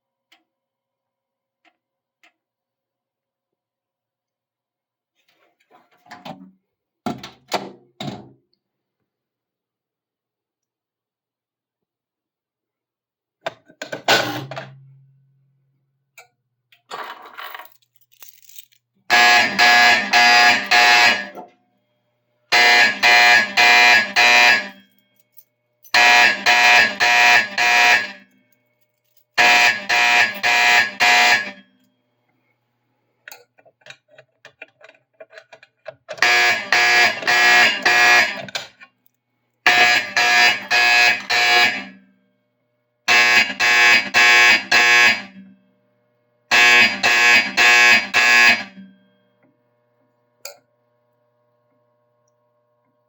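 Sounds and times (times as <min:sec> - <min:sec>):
fire alarm coded strokes: 0:19.1 - 0:21.4, 0:22.5 - 0:25.2, 0:25.9 - 0:28.3, 0:29.4 - 0:31.8, 0:36.2 - 0:38.5, 0:39.7 - 0:41.9, 0:43.1 - 0:45.3, 0:46.5 - 0:48.9.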